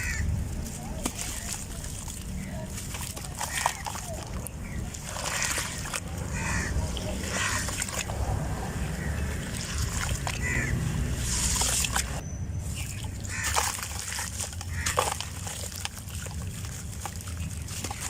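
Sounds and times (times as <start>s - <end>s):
cement shapes crumbling: 0.0s - 8.1s, 13.1s - 18.0s.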